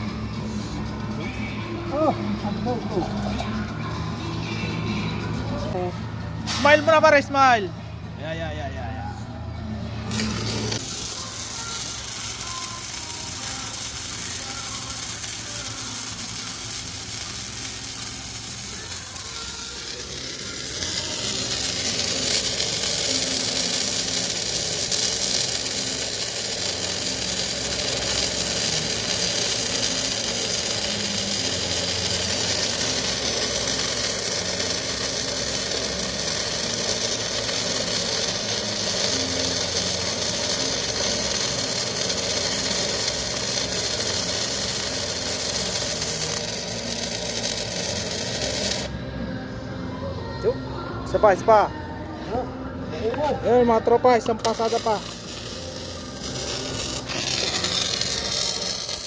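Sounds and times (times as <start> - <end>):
welding arc crackling sizzle: 6.4 - 7.7, 10.0 - 49.0, 53.2 - 59.0.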